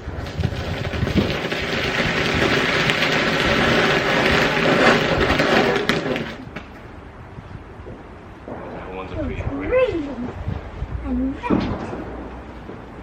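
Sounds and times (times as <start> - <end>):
fireworks hissing: 0.0 - 6.8.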